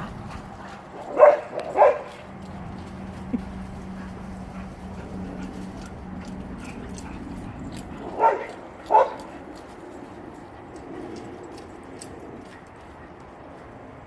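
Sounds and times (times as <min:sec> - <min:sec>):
low hum: 0:00.0 - 0:12.5
dog barking: 0:01.0 - 0:02.2, 0:08.1 - 0:09.3.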